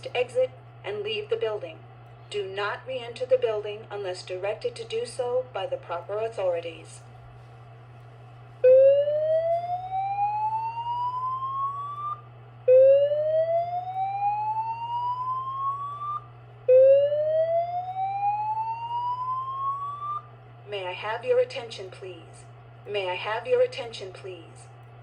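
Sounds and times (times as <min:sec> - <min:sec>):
steady low hum: 0:00.0 - 0:25.0
rising whoop alarm tone: 0:08.6 - 0:20.3.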